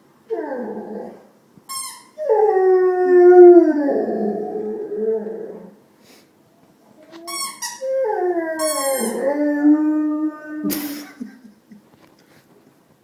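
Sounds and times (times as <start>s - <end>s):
dog howling: 2.2s - 5.8s, 7.8s - 10.7s
dog yelping: 8.6s - 9.3s.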